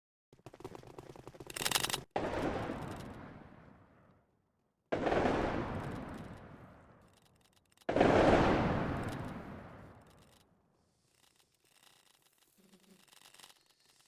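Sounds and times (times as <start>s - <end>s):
distant musket shots with echo: 4.9s - 7.0s, 7.9s - 10.0s
crackle and hiss: 5.5s - 14.0s.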